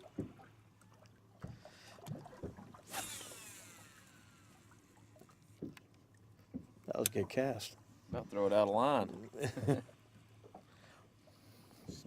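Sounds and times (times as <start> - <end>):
fishing cast swish: 2.9 - 3.9
fishing reel spool whine: 2.9 - 5.2.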